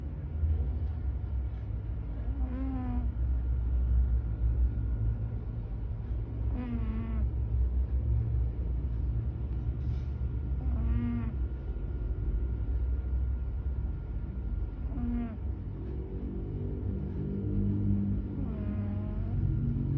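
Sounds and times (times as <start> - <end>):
steady low rumble: 0.0 - 19.9
cat snoring: 2.0 - 3.4, 6.2 - 7.4, 10.4 - 11.5, 14.4 - 15.5, 17.9 - 19.7.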